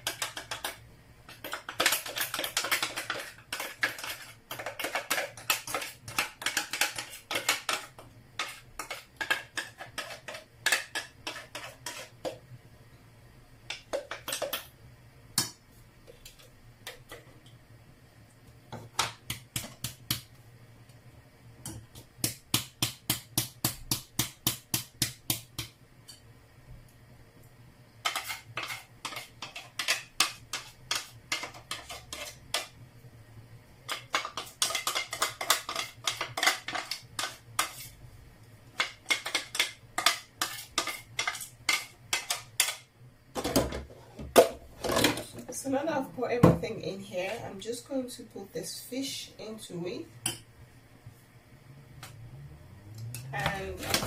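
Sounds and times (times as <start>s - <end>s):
spoon scraping blender jar: 1.8s - 12.2s, 28.1s - 32.5s.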